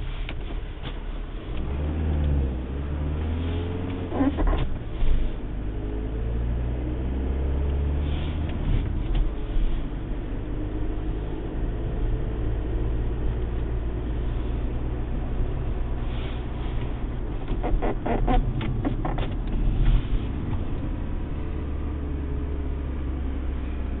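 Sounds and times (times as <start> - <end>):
car rumble: 0.0 - 24.0
gear knob squeaking: 3.9 - 4.8, 17.4 - 19.6.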